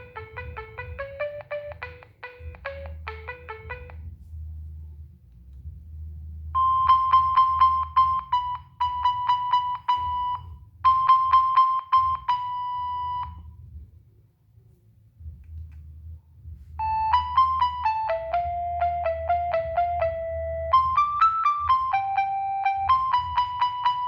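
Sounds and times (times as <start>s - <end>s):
polyphonic ringtone: 6.6s - 13.4s, 16.8s - 24.0s.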